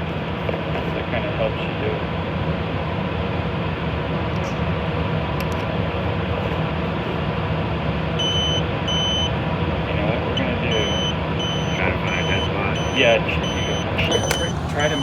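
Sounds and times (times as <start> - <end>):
mechanical hum and hiss: 0.0 - 15.0
continuity tester high beeps: 8.2 - 9.4, 10.4 - 15.0.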